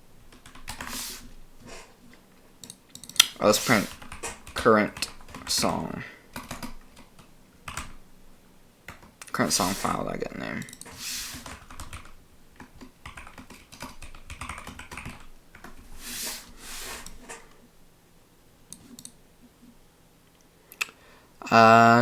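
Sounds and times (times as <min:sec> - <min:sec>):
computer keyboard typing: 0:00.3 - 0:01.0, 0:02.6 - 0:05.7, 0:06.3 - 0:08.0, 0:08.9 - 0:10.0, 0:10.6 - 0:15.9, 0:18.7 - 0:19.2.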